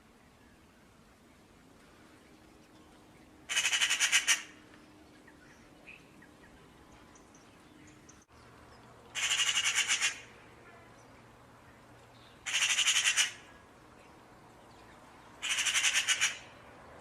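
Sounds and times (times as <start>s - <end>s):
bird rattling call: 3.5s - 4.6s, 9.1s - 10.3s, 12.4s - 13.5s, 15.4s - 16.5s.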